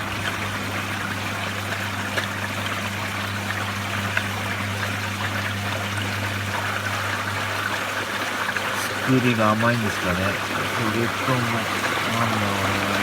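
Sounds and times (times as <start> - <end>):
washing machine humming: 0.0 - 13.0
water rushing and trickling: 0.0 - 13.0.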